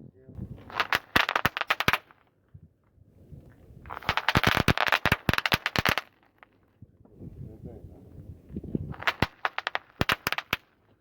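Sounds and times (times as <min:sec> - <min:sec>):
firecrackers popping: 0:00.4 - 0:02.4, 0:03.5 - 0:06.7, 0:08.7 - 0:11.0.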